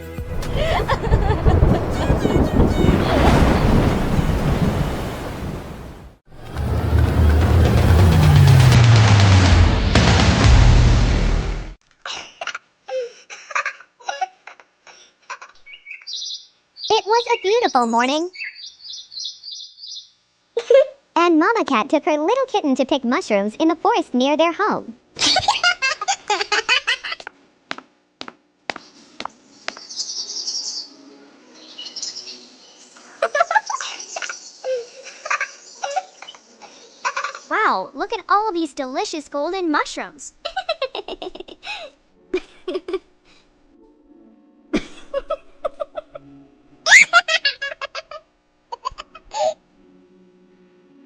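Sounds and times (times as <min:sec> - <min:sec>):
high-pitched giggling: 0:00.4 - 0:03.0
birds chirping: 0:00.4 - 0:06.2, 0:15.7 - 0:20.2.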